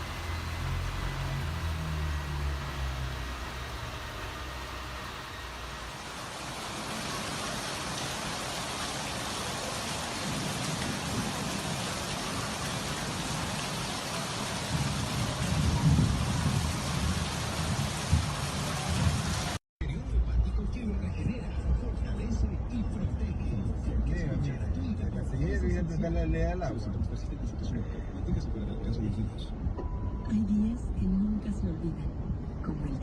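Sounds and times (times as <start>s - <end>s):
heavy rain pouring: 0.0s - 19.6s
low rumble: 14.6s - 33.0s.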